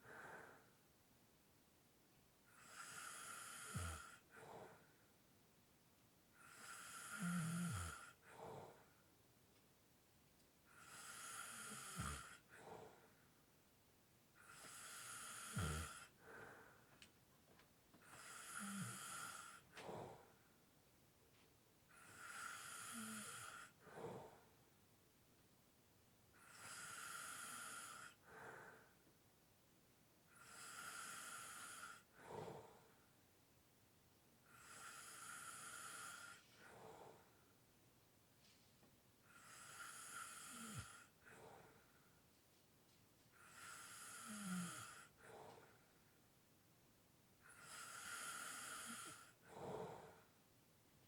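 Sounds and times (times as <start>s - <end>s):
person snoring lightly: 2.6s - 4.2s, 6.4s - 8.8s, 10.7s - 12.7s, 14.4s - 16.2s, 18.1s - 20.2s, 21.9s - 24.4s, 39.3s - 41.6s, 43.4s - 45.6s, 47.4s - 50.2s.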